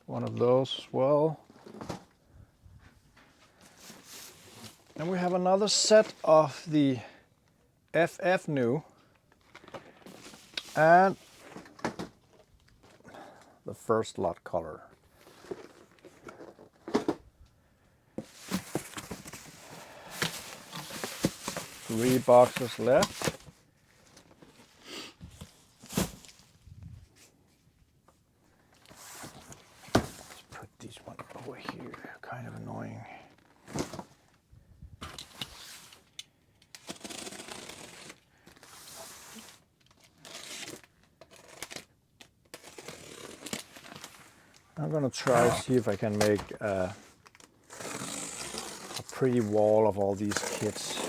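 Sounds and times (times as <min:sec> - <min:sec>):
cardboard rustling and crinkling: 0:02.8 - 0:06.2, 0:09.4 - 0:13.0, 0:14.9 - 0:17.3, 0:18.2 - 0:27.3, 0:28.7 - 0:32.6, 0:33.3 - 0:34.4, 0:36.8 - 0:51.0
cardboard boxes knocking and rustling: 0:18.2 - 0:23.6, 0:29.2 - 0:30.5.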